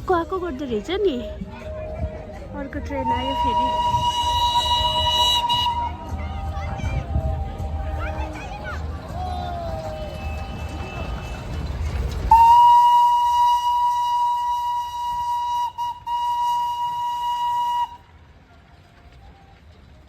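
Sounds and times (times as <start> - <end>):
train whistle long high note: 3.0 - 6.5, 12.3 - 18.1.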